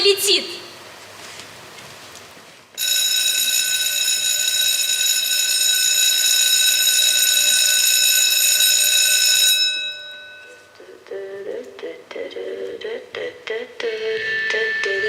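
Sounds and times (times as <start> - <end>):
electric school bell ringing: 2.8 - 10.8.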